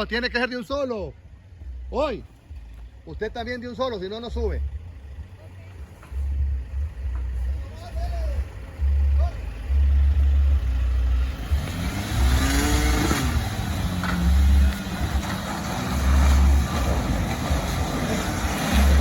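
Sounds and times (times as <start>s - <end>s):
off-road vehicle engine revving: 0.0s - 19.0s
loud low rumbles: 6.2s - 19.0s.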